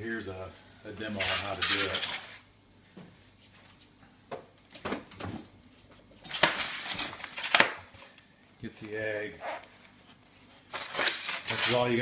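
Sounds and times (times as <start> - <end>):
rustling and scraping: 0.9 - 2.4, 3.1 - 4.0, 5.7 - 12.0.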